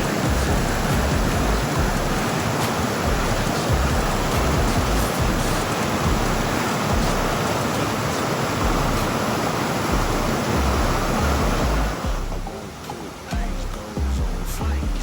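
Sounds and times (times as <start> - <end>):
deep bass thumps: 0.0 - 2.3, 3.0 - 7.4, 8.6 - 9.1, 9.9 - 12.6, 13.4 - 15.0
rushing water: 0.0 - 14.8.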